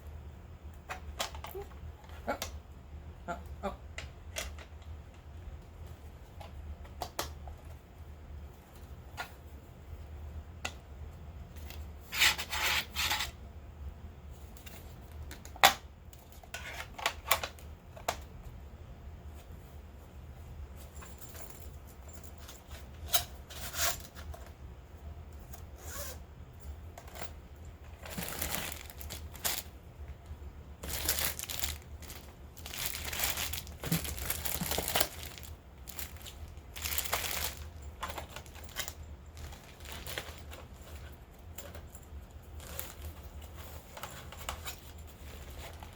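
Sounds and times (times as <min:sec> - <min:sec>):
low steady hum: 0:00.0 - 0:45.9
packaging crinkling and tearing: 0:27.9 - 0:29.8, 0:30.8 - 0:41.0, 0:42.5 - 0:43.4.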